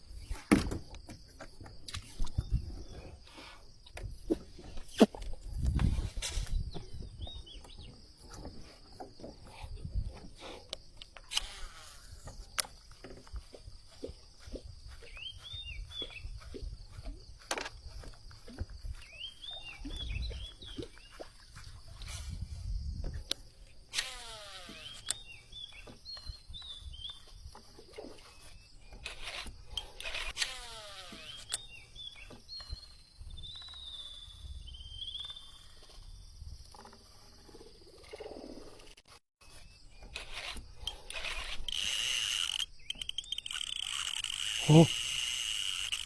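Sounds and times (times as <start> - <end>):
fishing reel whirring: 11.3 - 14.0, 23.9 - 25.4, 28.4 - 31.8, 40.0 - 46.0
sharp clicks: 28.9 - 31.7, 40.1 - 46.0
high-pitched insect chorus: 40.6 - 46.0.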